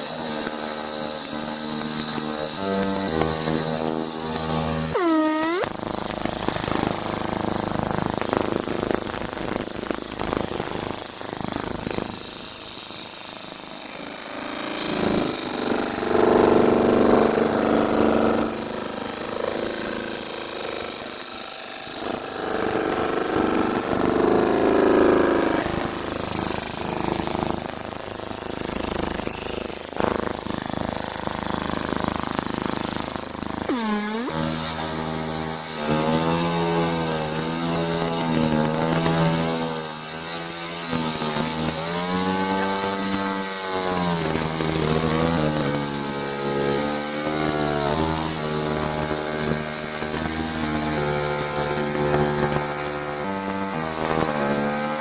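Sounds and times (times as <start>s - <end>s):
laser marking machine buzzing: 0.0s - 12.5s, 20.9s - 35.2s, 35.8s - 48.6s
wavering pitched buzz: 0.0s - 19.8s, 20.8s - 54.7s.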